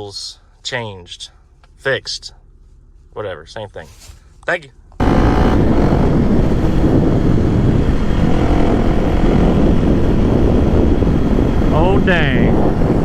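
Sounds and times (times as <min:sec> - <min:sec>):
motorcycle engine rumble: 0:04.0 - 0:13.0
wind on microphone: 0:05.0 - 0:13.0.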